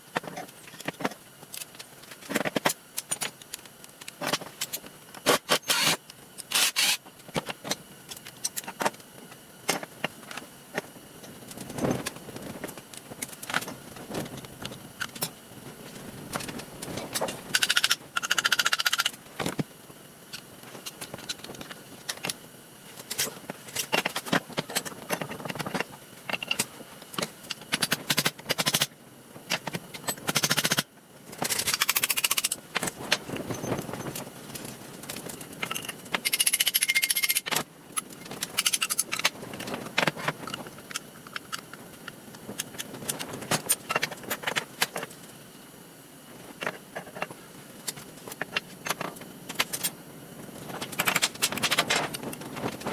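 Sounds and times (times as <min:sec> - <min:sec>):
tools clicking and clinking on parts: 0:16.4 - 0:19.6, 0:31.4 - 0:33.0, 0:33.7 - 0:41.8.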